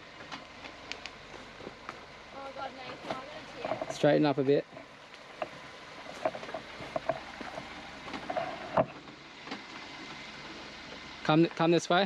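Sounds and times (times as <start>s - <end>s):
low engine hum: 0.0s - 12.0s
stones cracking under tyres: 5.1s - 10.2s.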